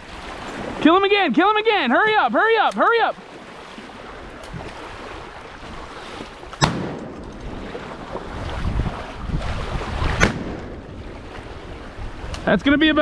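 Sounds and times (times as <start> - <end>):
water noise: 0.0 - 13.0
wind: 0.0 - 13.0
shotgun shot: 6.6 - 7.4, 10.2 - 10.8.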